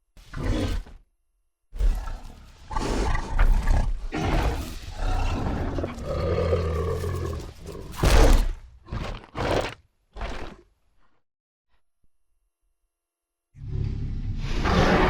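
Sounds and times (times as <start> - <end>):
creature roaring growl: 1.8 - 10.6.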